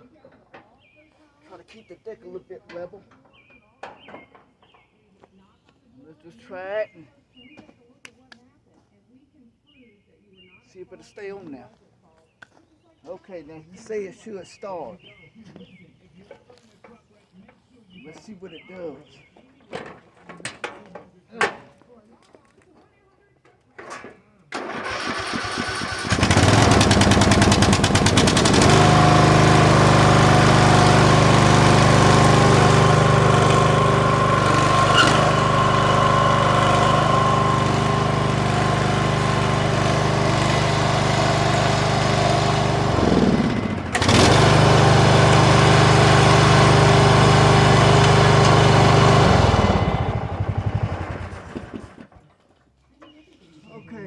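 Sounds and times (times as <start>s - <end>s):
lawn mower engine running: 24.5s - 52.4s.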